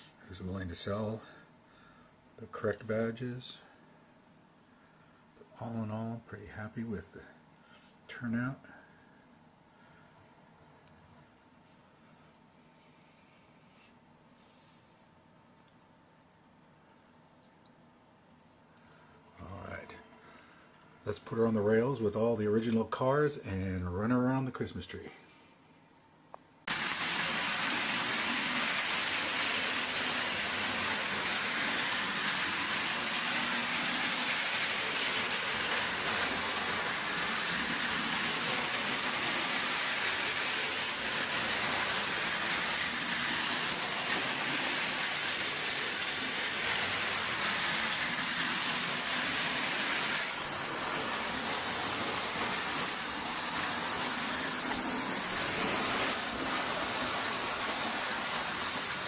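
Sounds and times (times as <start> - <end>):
toy train whirring on tin track: 26.7 - 59.0.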